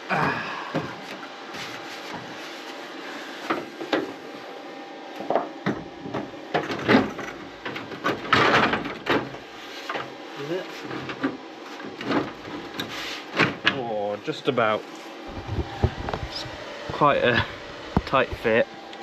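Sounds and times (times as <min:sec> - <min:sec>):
metal knocks clunks and scrapes: 0:05.3 - 0:10.1.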